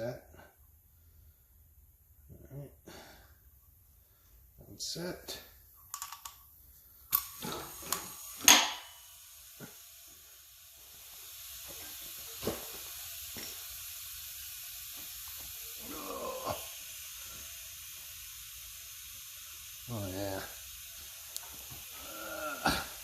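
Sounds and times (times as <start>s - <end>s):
fittings clicking and clacking: 5.8s - 6.5s, 7.1s - 8.9s
compressed air hissing: 6.9s - 23.0s.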